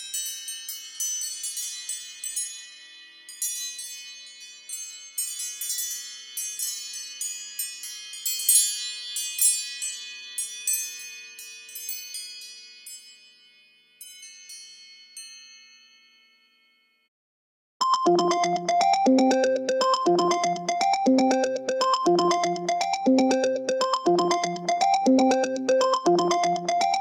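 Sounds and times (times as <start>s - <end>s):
phone ringtone chime melody: 17.8s - 27.0s.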